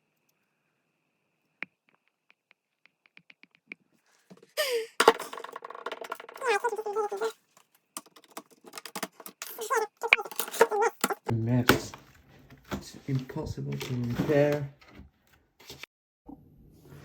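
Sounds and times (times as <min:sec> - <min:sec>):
small clicks and taps: 0:01.6 - 0:03.8
squeaking and creaking: 0:05.1 - 0:11.3.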